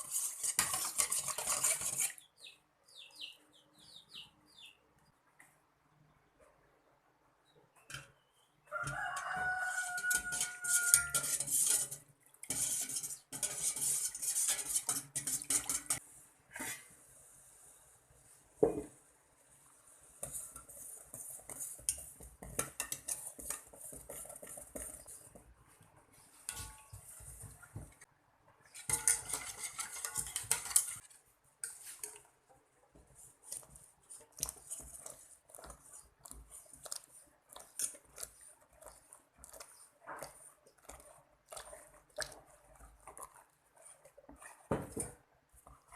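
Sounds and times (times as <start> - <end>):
metal spoon scraping in pot: 0.0 - 2.6, 7.8 - 17.0, 20.2 - 25.5, 26.2 - 28.0, 28.7 - 32.3, 33.4 - 45.9
rooster crowing: 8.7 - 11.3.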